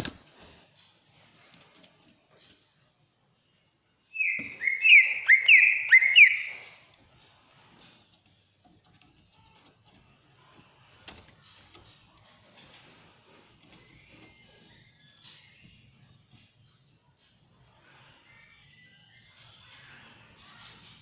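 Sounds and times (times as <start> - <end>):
bird song shrill whistles: 4.1 - 6.8.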